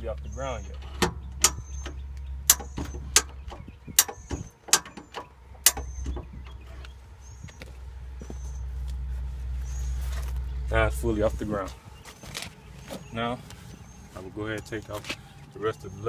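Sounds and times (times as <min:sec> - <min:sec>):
steady low rumble: 0:00.0 - 0:16.0
bumper jack clicking: 0:00.8 - 0:06.6.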